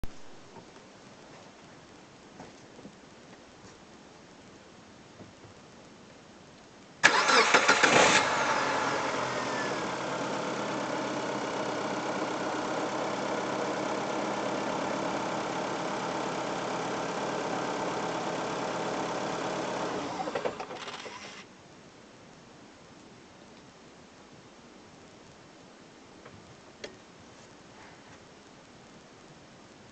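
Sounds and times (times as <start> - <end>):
engine cranking and starting: 7.0 - 11.8, 18.2 - 21.5
engine idling: 7.0 - 21.4.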